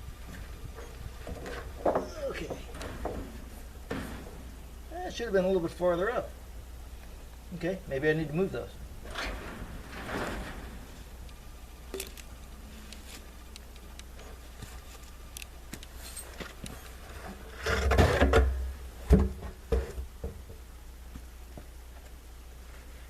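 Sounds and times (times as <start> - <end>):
scraping rub: 9.0 - 11.2
light clicks of parts: 11.2 - 16.8.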